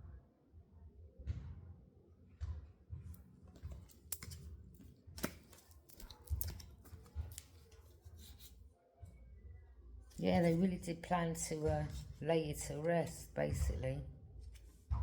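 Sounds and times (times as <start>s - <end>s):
cards shuffling: 3.5s - 8.6s
soft low thumps: 11.4s - 12.3s.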